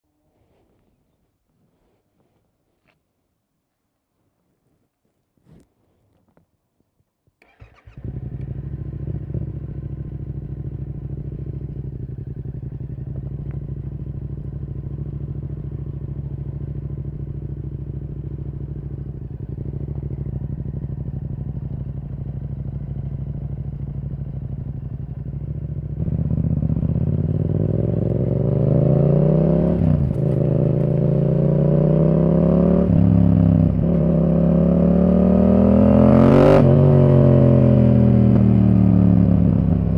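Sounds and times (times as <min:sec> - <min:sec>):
motorcycle engine idling: 0:07.4 - 0:35.3
motorcycle revving through gears: 0:07.5 - 0:16.3, 0:24.0 - 0:39.9.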